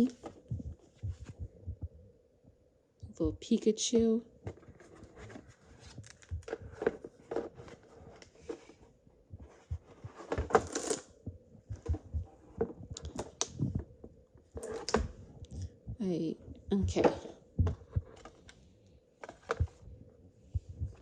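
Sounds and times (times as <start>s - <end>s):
cardboard packaging handled: 4.4s - 8.9s, 9.5s - 11.1s.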